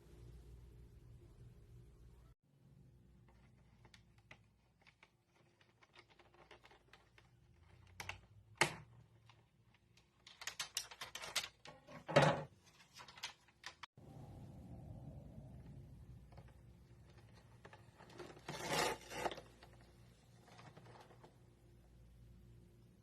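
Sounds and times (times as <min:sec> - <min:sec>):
packaging clicks and rustles: 0:03.4 - 0:11.8.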